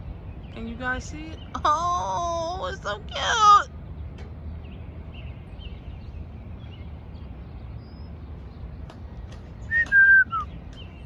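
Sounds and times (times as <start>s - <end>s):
low outdoor rumble: 0.0s - 11.0s
faint high bird chirps: 9.5s - 11.0s.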